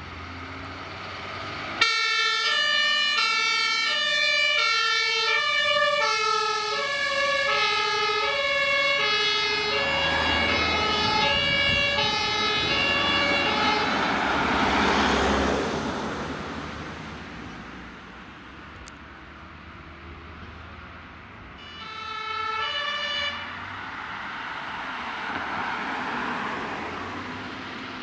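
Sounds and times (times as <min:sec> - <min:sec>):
truck engine and tyre noise: 0:00.0 - 0:28.0
two-tone siren: 0:01.8 - 0:14.2, 0:21.6 - 0:23.7.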